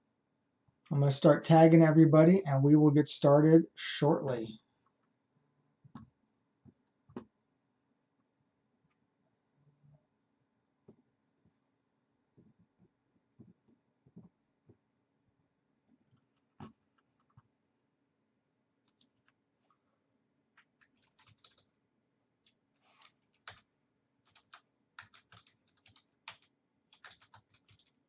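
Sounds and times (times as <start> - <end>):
keyboard typing: 18.8 - 19.4, 20.6 - 21.8, 22.4 - 28.0.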